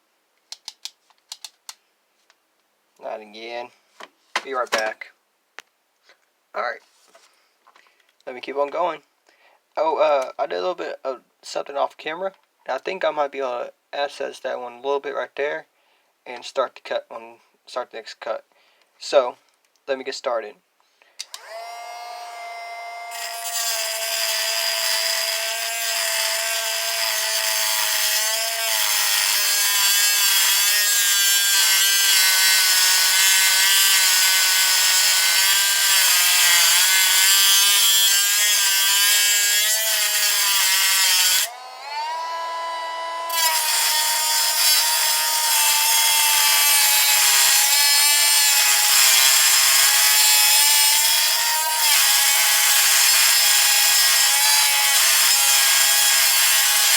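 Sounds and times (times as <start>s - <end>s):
rotary tool grinding metal: 21.3s - 56.9s.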